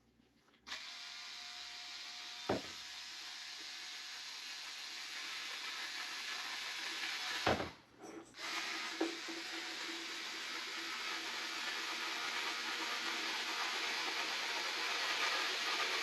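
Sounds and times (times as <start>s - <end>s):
cordless screwdriver running: 0.7s - 7.6s, 8.4s - 16.0s
sharp knock: 2.5s - 2.7s.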